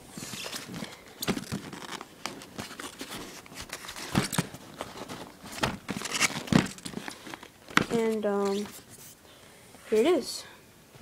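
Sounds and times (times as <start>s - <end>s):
packaging rustling and crinkling: 0.2s - 9.2s
packaging clicks and knocks: 0.6s - 8.0s.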